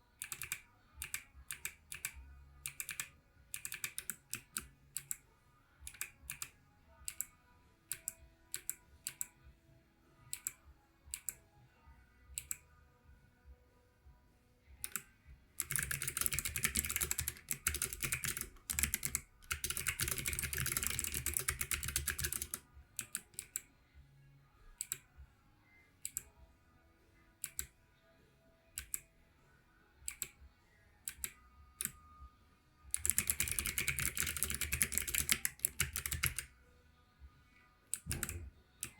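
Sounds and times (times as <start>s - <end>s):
clicky keyboard typing: 0.2s - 5.2s, 5.8s - 9.4s, 10.3s - 11.4s, 12.4s - 12.7s, 14.8s - 23.7s, 24.8s - 25.1s, 26.0s - 26.3s, 27.4s - 27.7s, 28.8s - 29.1s, 30.0s - 30.4s, 31.0s - 32.2s, 32.9s - 36.5s, 37.9s - 38.9s.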